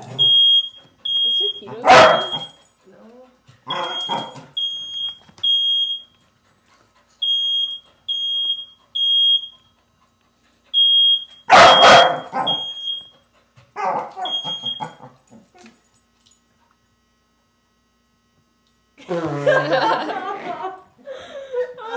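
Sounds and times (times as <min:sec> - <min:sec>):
smoke alarm beeping: 0:00.1 - 0:02.7, 0:03.7 - 0:06.2, 0:07.2 - 0:09.7, 0:10.7 - 0:13.2, 0:14.2 - 0:15.0
dog barking and yipping: 0:01.6 - 0:02.6, 0:03.6 - 0:04.5, 0:11.5 - 0:12.8, 0:13.8 - 0:15.1.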